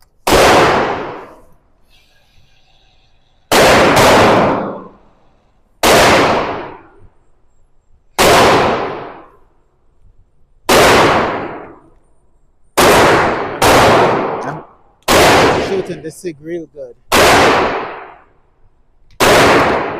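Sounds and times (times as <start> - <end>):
pistol gunshots echoing: 0.3 - 1.4, 3.5 - 5.0, 5.8 - 7.0, 8.2 - 9.3, 10.7 - 11.8, 12.8 - 14.4, 15.1 - 16.0, 17.1 - 18.2, 19.2 - 19.9.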